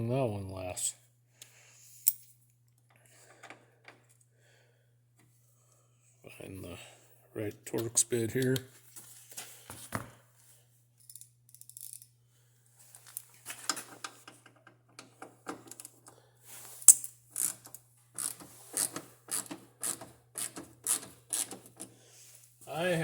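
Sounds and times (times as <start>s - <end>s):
hand ratchet clicking: 16.9s - 21.9s.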